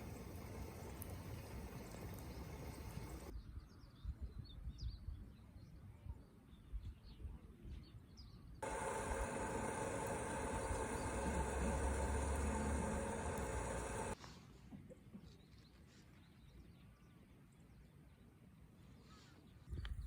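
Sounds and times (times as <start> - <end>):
steady hiss: 0.0 - 3.3, 8.6 - 14.2
steady hum with held tones: 0.0 - 3.3, 8.6 - 14.2.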